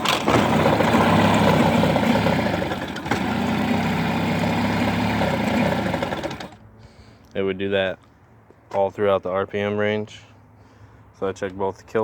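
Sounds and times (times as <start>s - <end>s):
outboard motor misfiring: 0.0s - 6.6s.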